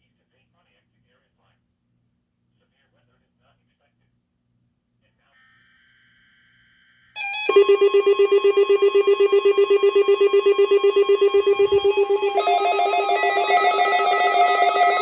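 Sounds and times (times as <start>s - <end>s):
higher pulsing alarm tone: 7.2s - 15.0s
rapidly pulsing alarm tone: 7.2s - 15.0s.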